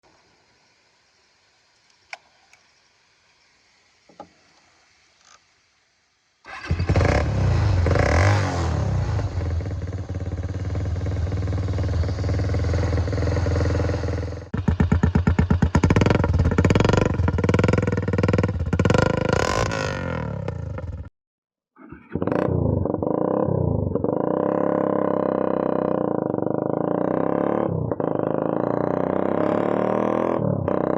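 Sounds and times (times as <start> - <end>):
motorcycle engine running loud: 6.5 - 21.1, 22.2 - 30.9.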